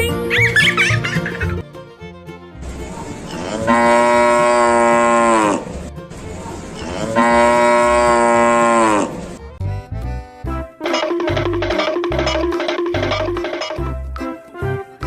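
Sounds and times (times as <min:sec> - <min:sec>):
cow mooing: 0:03.3 - 0:05.7, 0:06.8 - 0:09.2.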